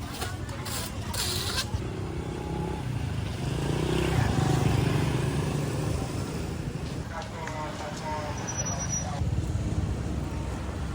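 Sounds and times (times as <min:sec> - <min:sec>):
motorbike engine passing: 0:01.8 - 0:07.0.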